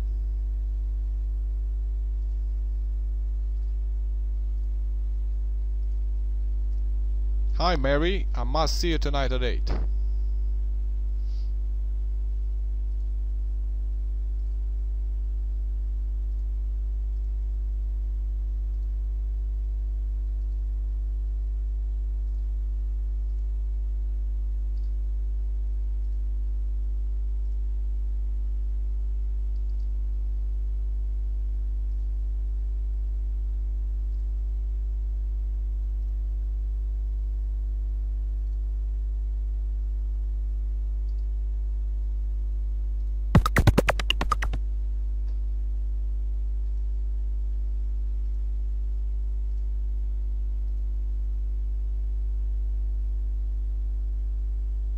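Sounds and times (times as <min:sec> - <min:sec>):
low electrical hum: 0:00.0 - 0:54.9
faint ticks: 0:24.7 - 0:25.0, 0:29.5 - 0:30.3.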